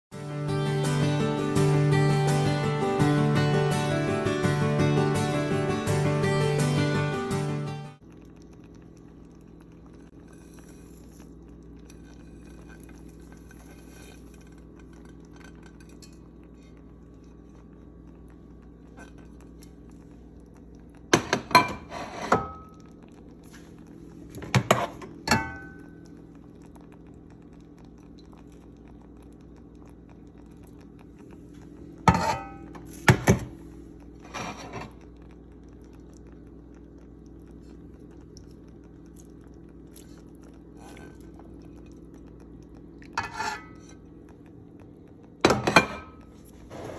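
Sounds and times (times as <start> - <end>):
steady low hum: 0.2 - 46.9.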